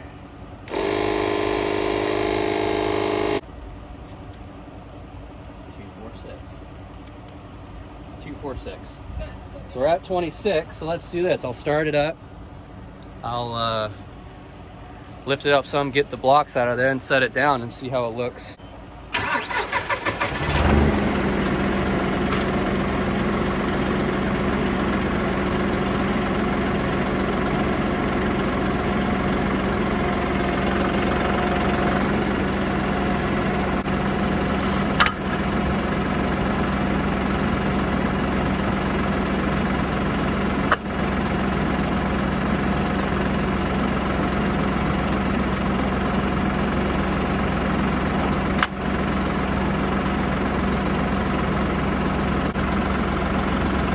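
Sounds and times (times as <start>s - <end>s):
diesel engine idling: 19.1s - 53.9s
tractor engine cranking: 19.2s - 51.0s.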